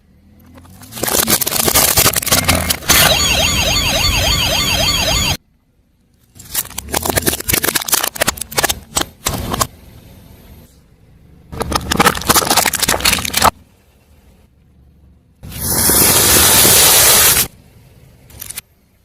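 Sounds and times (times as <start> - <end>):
objects crushed under car tyre: 0.6 - 3.1, 11.6 - 13.6
loud hiss: 15.5 - 17.6.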